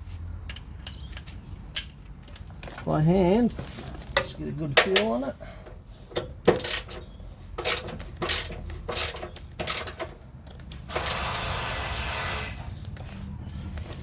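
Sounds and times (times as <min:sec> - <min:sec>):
ratchet wrench clicking: 0:06.5 - 0:07.0, 0:07.6 - 0:10.1, 0:10.9 - 0:11.5.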